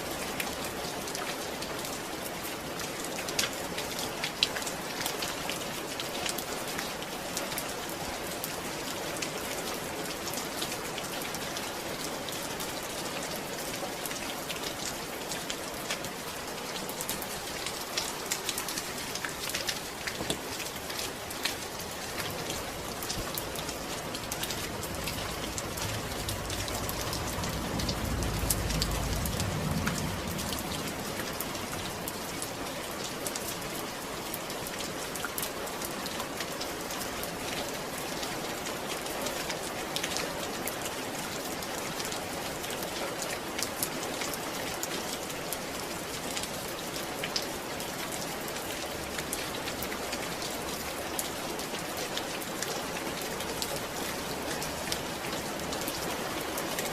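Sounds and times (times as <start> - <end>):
rain falling: 0.0 - 56.9
low rumble: 23.4 - 32.2.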